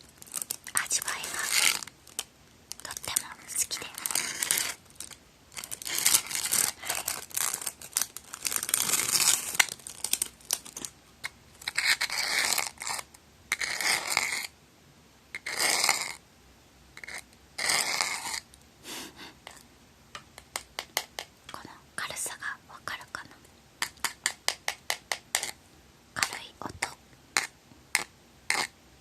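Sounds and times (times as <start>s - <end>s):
plastic wrapper crinkling and tearing: 0.0s - 11.0s.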